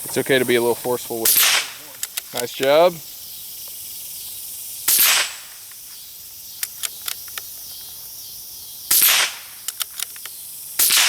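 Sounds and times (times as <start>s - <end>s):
pistol shot: 1.2s - 1.8s, 4.9s - 5.5s, 8.9s - 9.6s, 10.8s - 11.0s.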